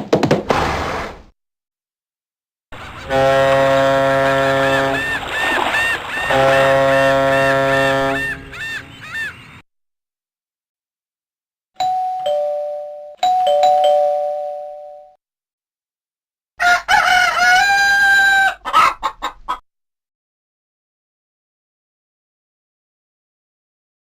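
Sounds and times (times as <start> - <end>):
rooster crowing: 4.0 - 9.2, 16.6 - 19.1
ding-dong doorbell chime: 11.8 - 15.2
chicken clucks: 18.3 - 19.6.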